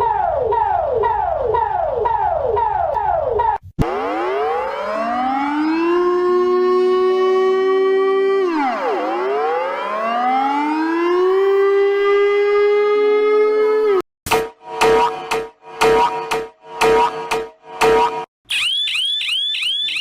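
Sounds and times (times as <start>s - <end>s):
civil defense siren: 3.8s - 14.0s, 17.9s - 20.0s.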